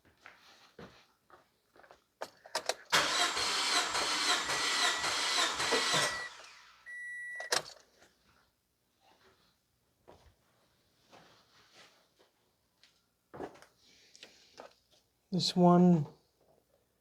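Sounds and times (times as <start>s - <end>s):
starter motor cranking engine: 2.9s - 6.8s
short steady beep: 5.9s - 7.6s.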